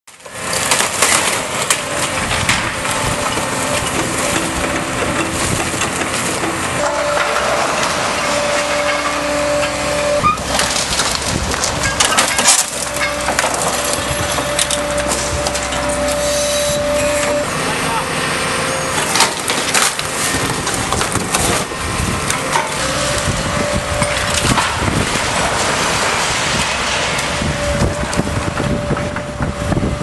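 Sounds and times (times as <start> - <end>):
rubble crunching and cracking: 0.1 - 7.9, 10.4 - 15.8
debris falling: 0.4 - 16.3
machine whine: 1.4 - 30.0.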